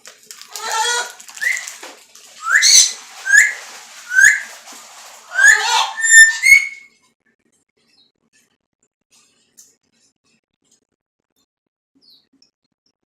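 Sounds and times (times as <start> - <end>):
parrot whistles and squawks: 0.5 - 1.8, 2.4 - 4.6, 5.2 - 6.9.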